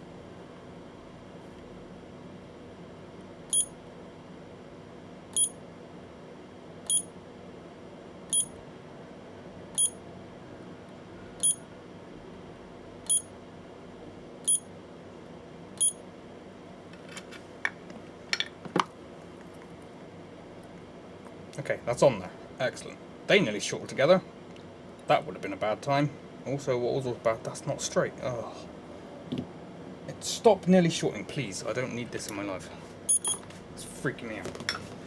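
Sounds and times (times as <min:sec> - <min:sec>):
short high beeps: 0:03.5 - 0:03.7, 0:05.4 - 0:05.6, 0:06.9 - 0:07.1, 0:08.3 - 0:08.5, 0:09.8 - 0:10.0, 0:13.1 - 0:13.3, 0:33.1 - 0:33.4.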